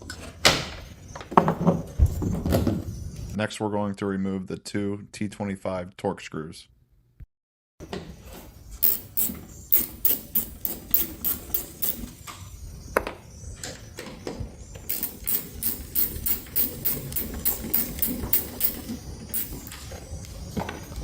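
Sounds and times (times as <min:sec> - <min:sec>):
ratchet clicking: 0:08.8 - 0:12.1, 0:14.9 - 0:19.8.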